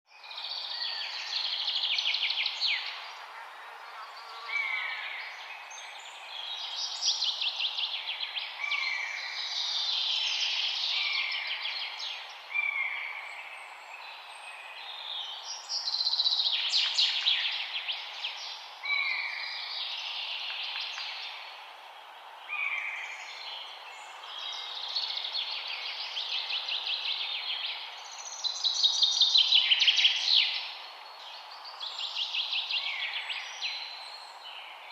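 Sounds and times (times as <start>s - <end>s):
steady background hiss: 0.1s - 34.9s
birds singing: 22.5s - 34.9s.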